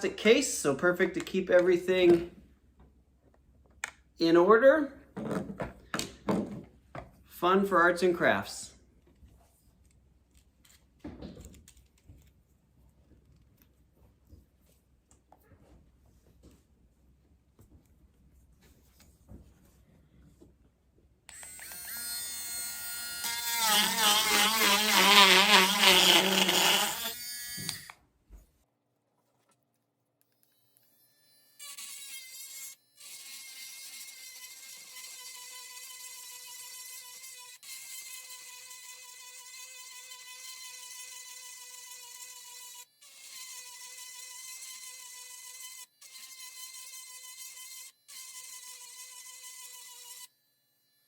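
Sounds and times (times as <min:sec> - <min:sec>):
rotary tool buzzing whine: 0:21.3 - 0:28.0, 0:30.3 - 0:51.0.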